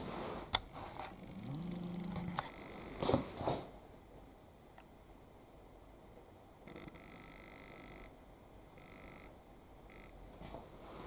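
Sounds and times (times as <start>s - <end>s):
faint steady hiss: 0.0s - 11.0s.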